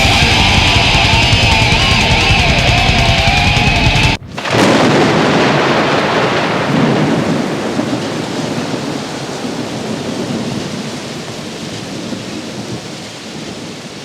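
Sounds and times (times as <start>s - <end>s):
loud even rushing noise: 0.0s - 8.0s.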